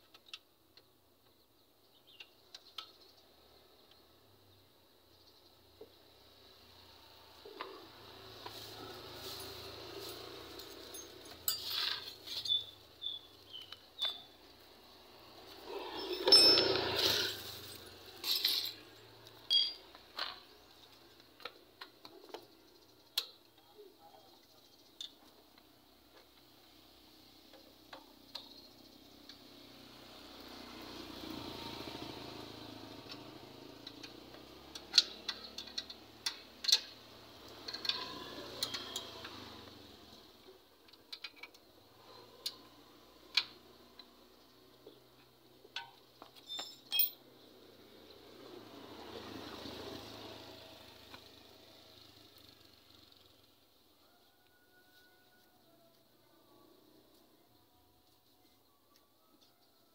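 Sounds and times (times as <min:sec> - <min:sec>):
small hard objects clinking: 0:08.8 - 0:14.3, 0:15.7 - 0:20.7, 0:45.8 - 0:47.2.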